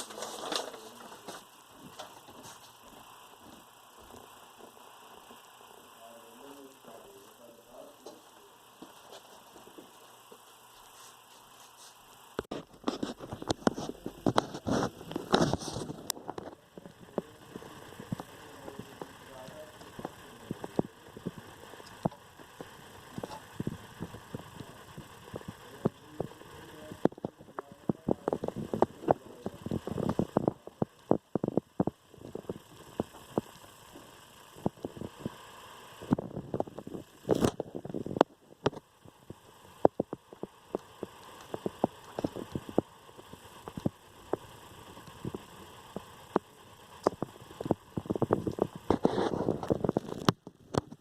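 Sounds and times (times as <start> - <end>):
faint steady hiss: 0.0 - 51.0.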